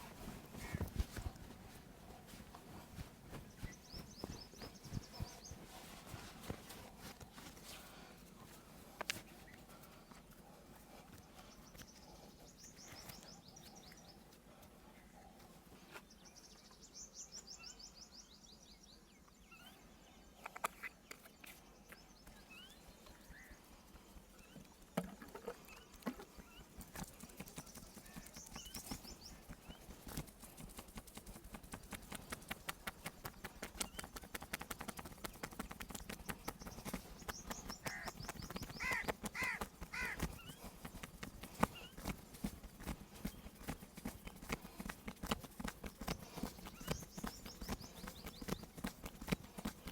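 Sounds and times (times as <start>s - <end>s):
birds trilling: 36.1s - 42.2s.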